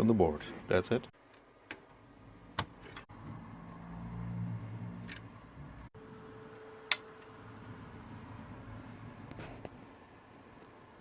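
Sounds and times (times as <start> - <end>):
cooling fan humming: 5.1 - 11.0.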